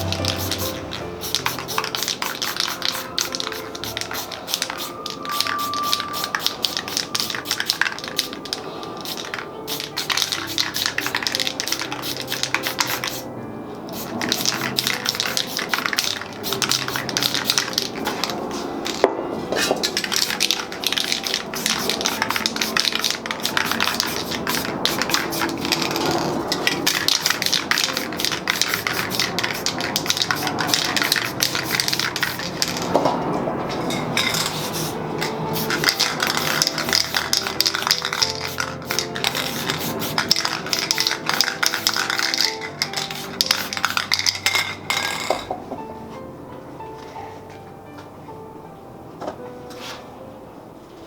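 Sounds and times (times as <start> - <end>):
spray paint cans hissing: 0.0 - 33.1, 33.8 - 45.6
clicks and clatter of cans: 35.6 - 45.6.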